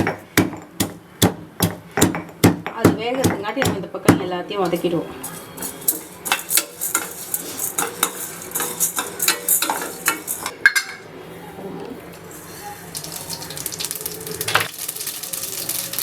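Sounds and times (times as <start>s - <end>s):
metal spoon scraping a pan: 4.7s - 11.0s
spoon clinking on metal: 4.7s - 11.0s.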